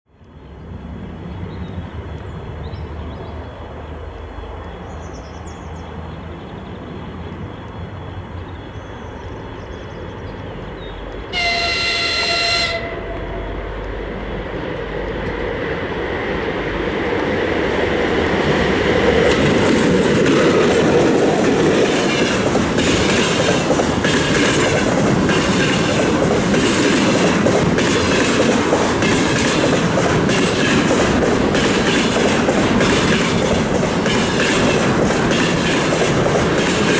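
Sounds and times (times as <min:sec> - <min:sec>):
locomotive rumble: 0:00.4 - 0:36.9
locomotive horn blast: 0:11.3 - 0:13.8
wagon wheels clattering: 0:19.4 - 0:36.9.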